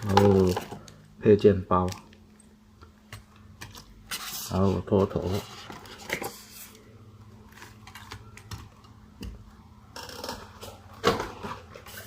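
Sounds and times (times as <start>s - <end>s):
packaging rustling: 0.0s - 1.0s.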